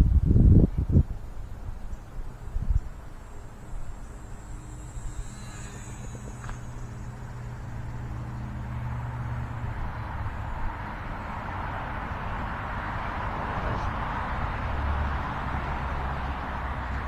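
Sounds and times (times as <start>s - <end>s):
gusty wind on microphone: 0.0s - 17.0s
small electric motor whine: 1.3s - 13.2s.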